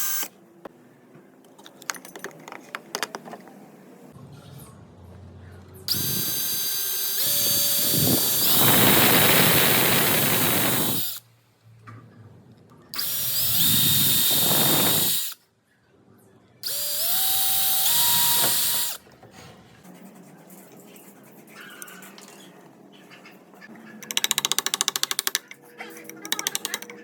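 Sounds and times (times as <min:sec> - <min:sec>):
power drill whining: 0:00.0 - 0:00.3, 0:05.9 - 0:11.2, 0:13.0 - 0:15.4, 0:16.6 - 0:19.0.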